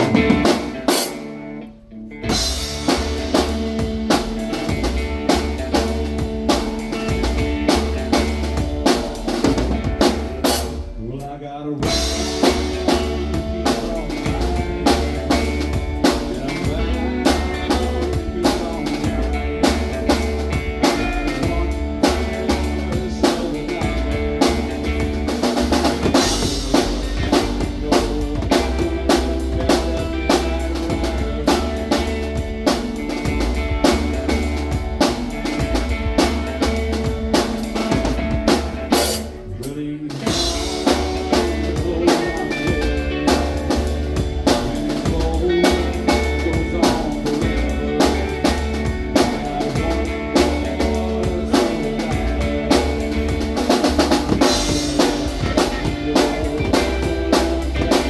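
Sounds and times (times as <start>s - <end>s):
drum kit beat: 0.0s - 1.6s, 2.2s - 58.0s
live rock band playing: 0.0s - 11.2s, 11.8s - 58.0s.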